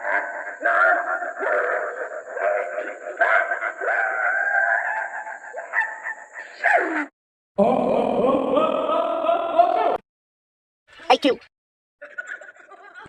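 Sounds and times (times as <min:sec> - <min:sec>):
cartoon voice wailing and moaning: 0:06.7 - 0:10.0.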